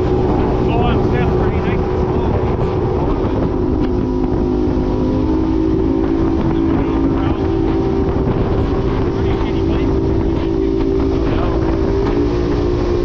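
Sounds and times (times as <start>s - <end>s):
boat engine drone: 0.0s - 13.0s
rushing water: 0.0s - 13.0s.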